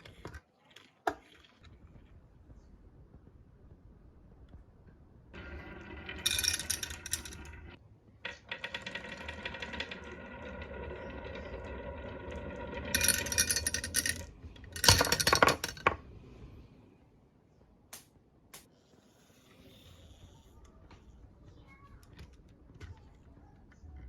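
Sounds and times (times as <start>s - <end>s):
marbles clattering: 5.4s - 16.0s
marbles rolling down a track: 5.4s - 16.0s.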